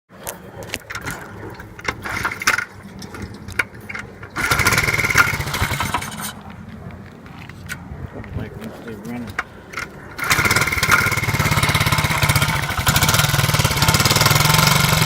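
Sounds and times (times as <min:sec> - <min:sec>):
minibike engine running: 0:00.6 - 0:07.5, 0:09.1 - 0:15.0.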